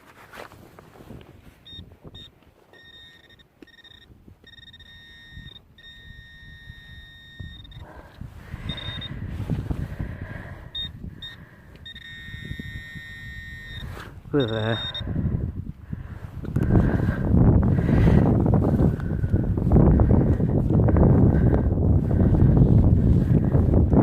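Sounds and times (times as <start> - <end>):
soil scraping and rustling: 0.0 - 1.7
metal detector tone: 1.6 - 9.3, 10.6 - 15.1.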